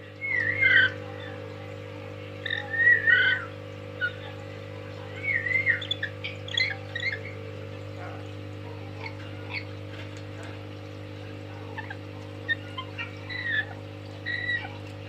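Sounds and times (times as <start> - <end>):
parrot whistles and chirps: 0.2 - 1.0, 2.4 - 4.2, 5.2 - 7.4, 11.8 - 14.8.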